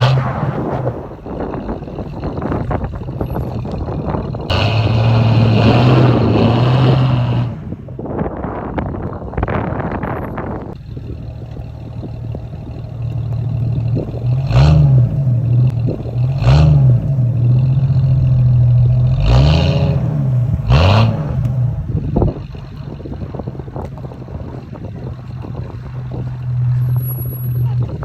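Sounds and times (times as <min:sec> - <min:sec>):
rushing noise: 0:00.0 - 0:03.0
car engine revving: 0:00.0 - 0:08.0, 0:10.8 - 0:28.0.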